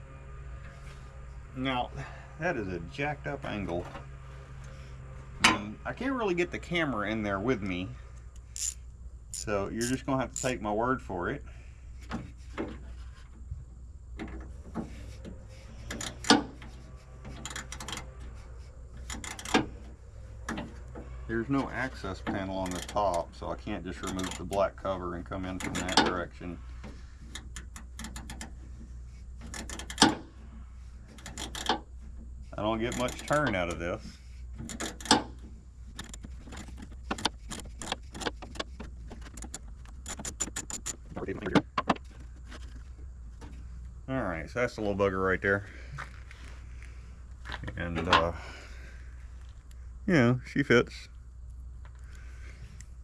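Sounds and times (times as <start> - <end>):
steady low hum: 0.0 - 53.0
screwdriver clicking and scraping: 8.2 - 10.6, 17.3 - 18.0, 27.3 - 28.6, 35.9 - 41.0.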